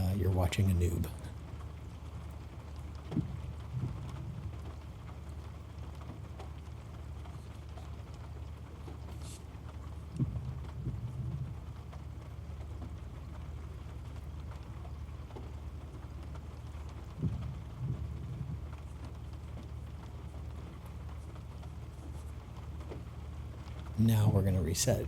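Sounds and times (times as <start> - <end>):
low rumble inside car: 0.0 - 25.0
faint ticks: 1.1 - 24.1
soft bumps: 8.8 - 12.0.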